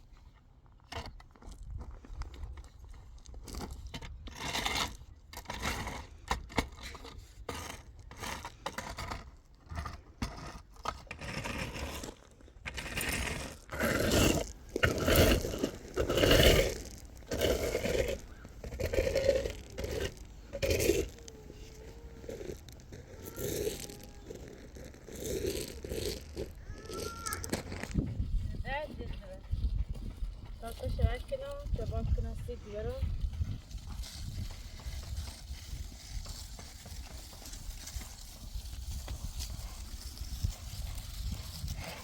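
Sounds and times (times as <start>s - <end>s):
scraping strokes: 4.3s - 28.0s.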